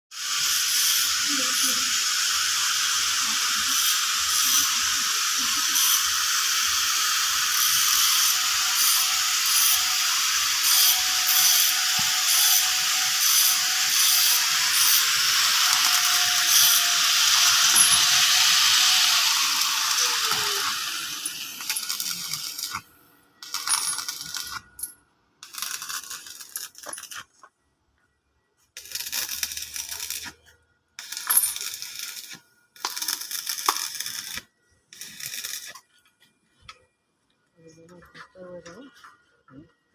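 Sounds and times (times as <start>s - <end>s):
angle grinder grinding steel: 0.1s - 22.8s, 23.4s - 24.6s, 31.0s - 35.8s.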